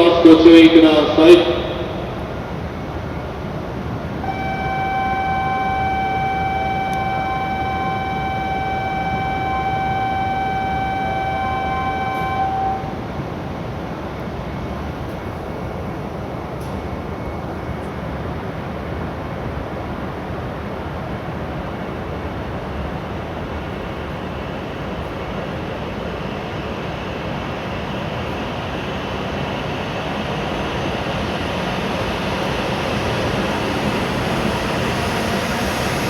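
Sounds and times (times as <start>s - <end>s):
announcement: 0.0s - 2.0s, 4.2s - 13.2s
platform and train rumble: 0.0s - 36.0s
electronic warning tone: 4.2s - 13.0s.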